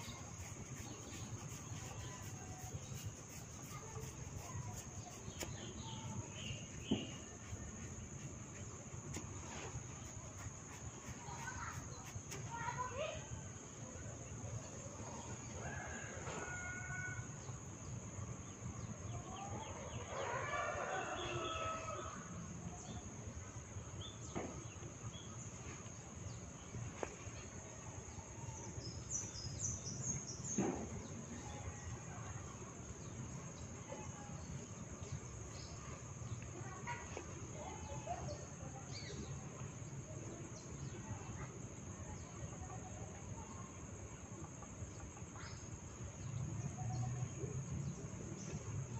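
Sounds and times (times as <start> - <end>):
rooster crowing: 20.1 - 22.2.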